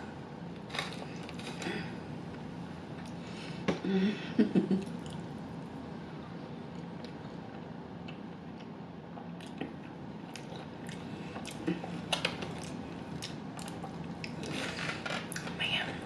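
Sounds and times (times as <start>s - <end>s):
person chewing food: 4.8s - 5.3s, 6.7s - 14.7s.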